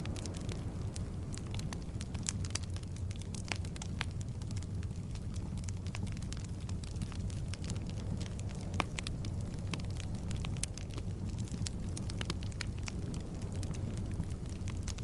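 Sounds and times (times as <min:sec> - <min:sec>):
logs crackling and popping: 0:00.0 - 0:15.0
low rumble of flames: 0:00.0 - 0:15.0.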